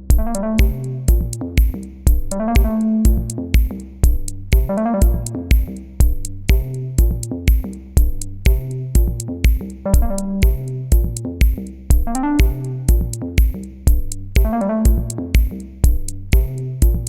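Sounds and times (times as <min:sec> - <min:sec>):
synthesizer chords and melody: 0:00.0 - 0:07.6, 0:08.5 - 0:11.2, 0:12.0 - 0:13.5, 0:14.4 - 0:15.7
drum machine beat: 0:00.0 - 0:17.0.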